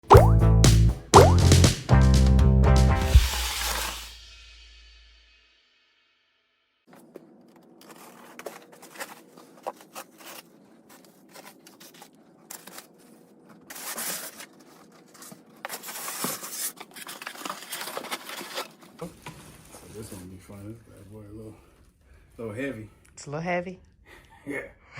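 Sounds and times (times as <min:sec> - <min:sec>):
packaging tearing and crinkling: 0:15.8 - 0:18.8.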